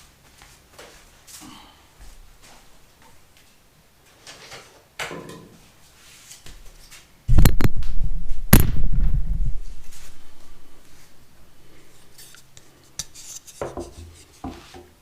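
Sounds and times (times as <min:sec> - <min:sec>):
low rumble: 0:07.6 - 0:10.8.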